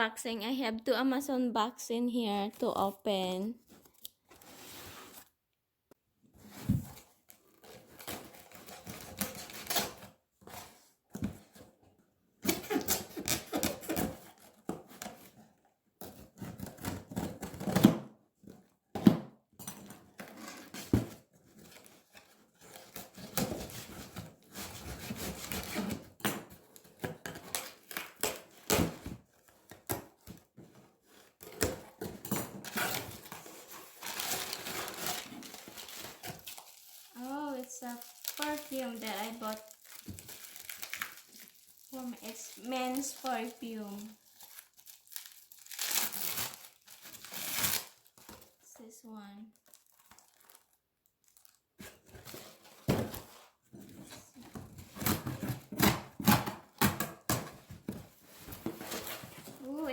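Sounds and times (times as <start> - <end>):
packaging rustling: 32.6 - 48.6, 49.6 - 55.8.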